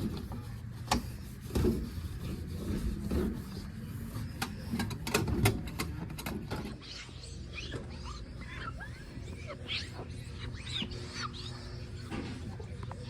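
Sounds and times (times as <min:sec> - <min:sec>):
sharp clicks and knocks: 0:04.2 - 0:06.8.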